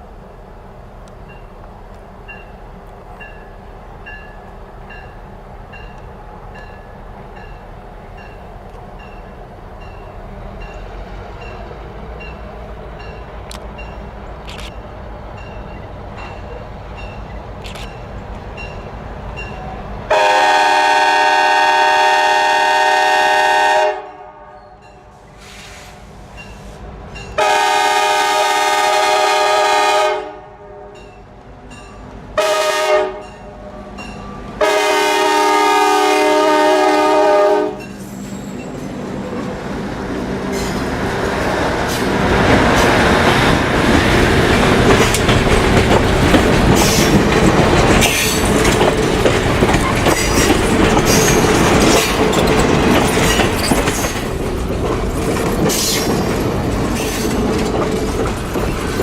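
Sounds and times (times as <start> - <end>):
locomotive air horn blasts: 20.1 - 24.8, 27.4 - 31.0, 32.4 - 33.8, 34.6 - 37.9
train wheels clattering over rail joints: 40.5 - 59.0.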